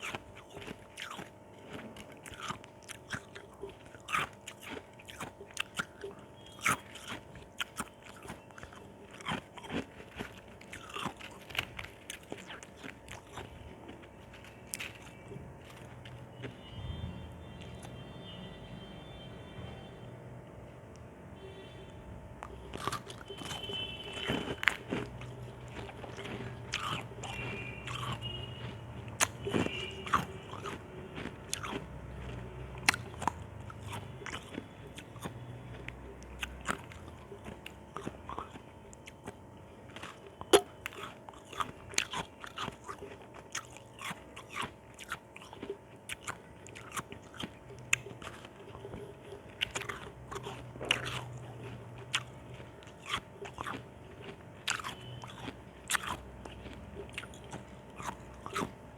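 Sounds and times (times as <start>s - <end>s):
ice being chewed: 0.0s - 18.0s, 22.4s - 58.9s.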